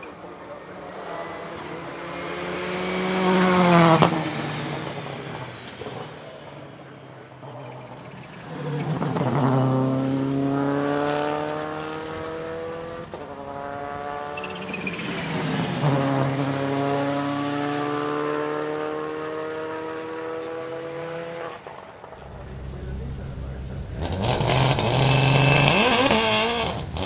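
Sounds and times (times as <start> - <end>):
rally car engine accelerating: 7.5 - 27.0.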